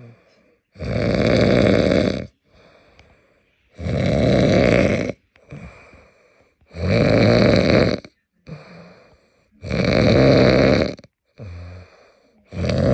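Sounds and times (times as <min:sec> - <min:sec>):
quiet breathing: 0:00.0 - 0:00.9, 0:01.8 - 0:06.9, 0:07.8 - 0:09.8, 0:11.0 - 0:12.9
man snoring: 0:00.8 - 0:02.4, 0:03.8 - 0:05.9, 0:06.7 - 0:08.7, 0:09.6 - 0:12.9.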